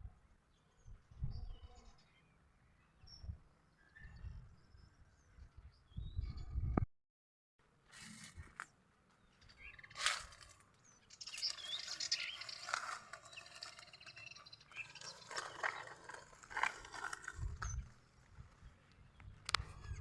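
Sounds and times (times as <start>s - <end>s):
birds chirping: 8.7s - 20.0s.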